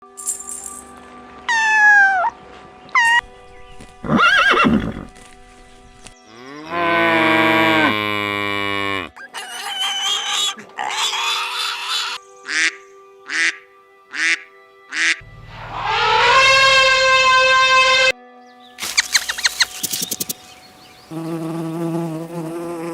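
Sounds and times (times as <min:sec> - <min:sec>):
animal calls: 0:01.5 - 0:02.3, 0:06.4 - 0:18.1.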